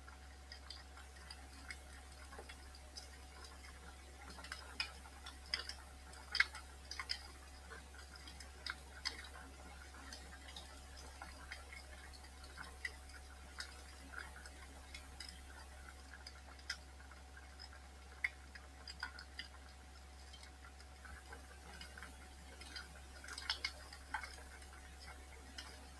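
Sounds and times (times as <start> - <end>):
wood fire crackling: 0.1 - 25.9.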